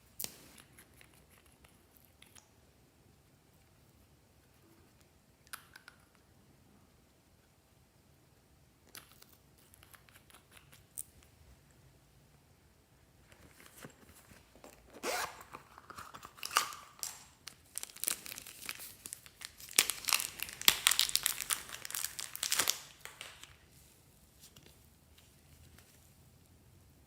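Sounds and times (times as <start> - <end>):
material crinkling: 13.2 - 26.3.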